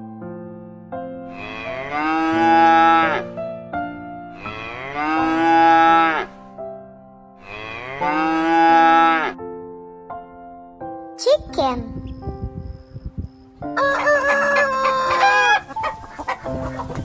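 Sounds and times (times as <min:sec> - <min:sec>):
soft keyboard tune: 0:00.0 - 0:04.4, 0:09.4 - 0:17.0
cow mooing: 0:01.3 - 0:03.3, 0:04.3 - 0:06.4, 0:07.4 - 0:09.4.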